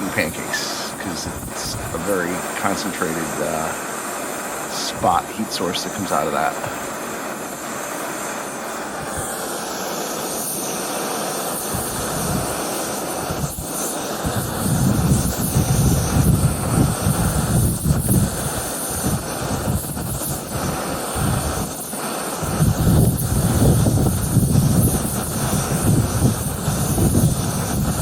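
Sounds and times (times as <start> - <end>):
camping stove hissing roar: 0.0 - 28.0
wind buffeting microphone: 11.7 - 12.6, 13.2 - 21.7, 22.4 - 28.0.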